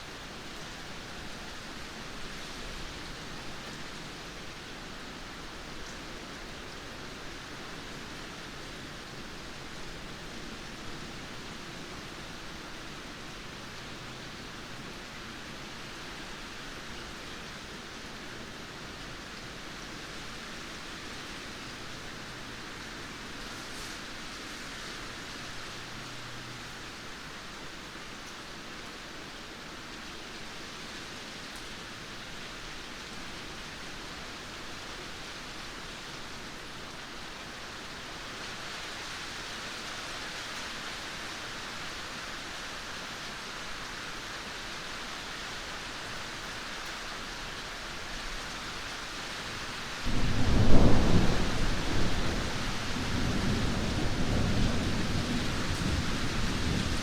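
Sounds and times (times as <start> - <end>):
rain hiss: 0.0 - 57.0
thunder rumble: 50.1 - 57.0.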